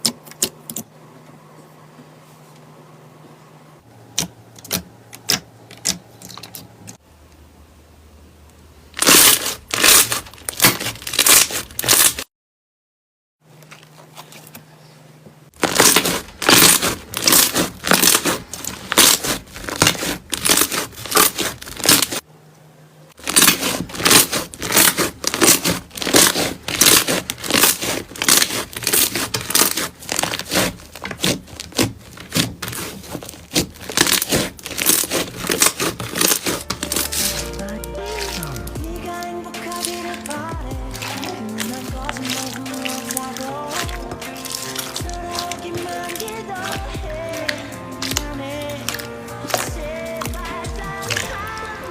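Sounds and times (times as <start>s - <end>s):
slime crackling and popping: 8.9s - 12.2s, 15.6s - 22.2s, 23.2s - 51.9s.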